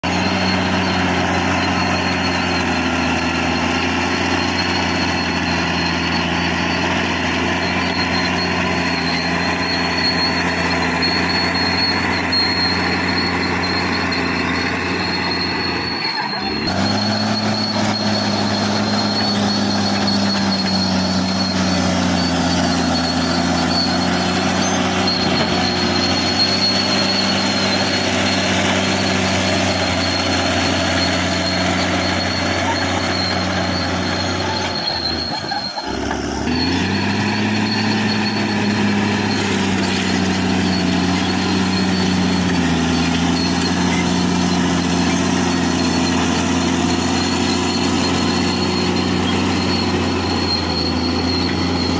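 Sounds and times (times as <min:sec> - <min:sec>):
bulldozer diesel engine running: 0:00.0 - 0:51.9.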